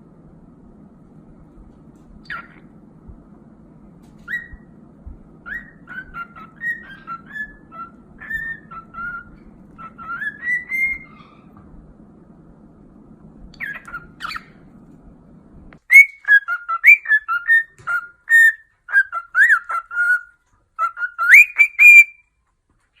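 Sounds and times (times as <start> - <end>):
faint bird chirps: 2.2 - 2.8, 4.2 - 4.8, 5.4 - 11.6, 13.5 - 14.7.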